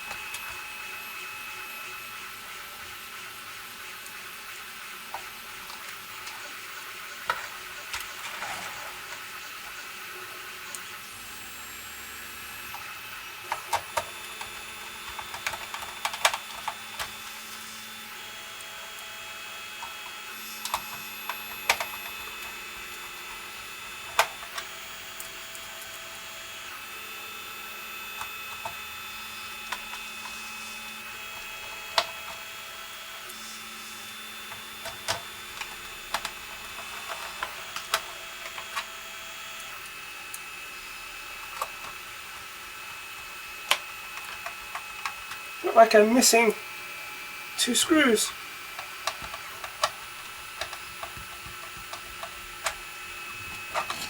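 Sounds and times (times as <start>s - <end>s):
plastic parts clicking and knocking: 13.4s - 17.2s, 21.6s - 22.5s, 24.0s - 24.7s, 34.5s - 39.0s, 41.4s - 42.5s, 43.6s - 45.4s, 48.7s - 54.0s.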